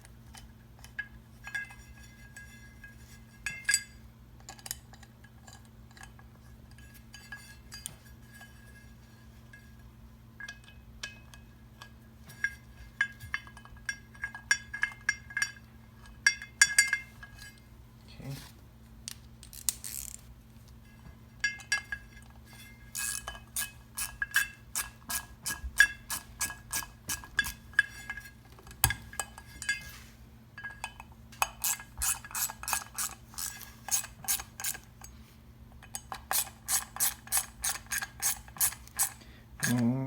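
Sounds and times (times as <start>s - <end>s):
hand ratchet clicking: 19.4s - 20.2s, 23.0s - 27.5s, 31.4s - 35.1s, 35.9s - 39.8s.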